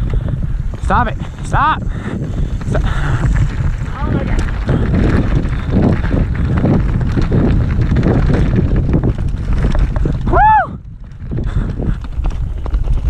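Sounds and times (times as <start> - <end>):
mountain bike rattling: 0.0 - 13.0
wind buffeting microphone: 0.0 - 13.0
person shouting: 10.3 - 10.8.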